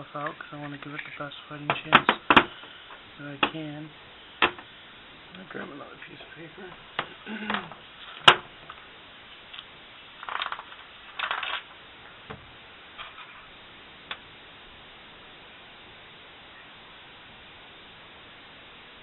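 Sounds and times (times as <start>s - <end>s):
rustles: 0.0s - 18.9s
metal parts clicking: 10.2s - 11.7s.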